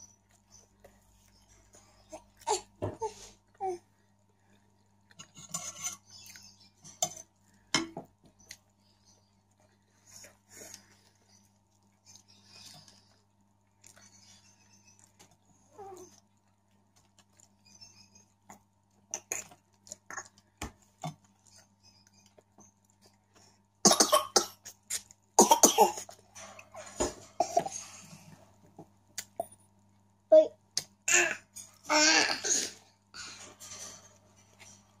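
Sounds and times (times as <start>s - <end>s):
person coughing: 25.4s - 26.1s.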